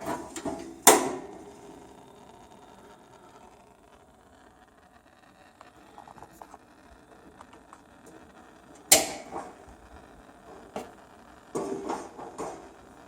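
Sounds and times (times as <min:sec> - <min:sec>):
gas heater controls clicking: 0:00.0 - 0:01.5, 0:08.7 - 0:09.6
loud sharp snap: 0:00.4 - 0:01.3, 0:08.9 - 0:09.5.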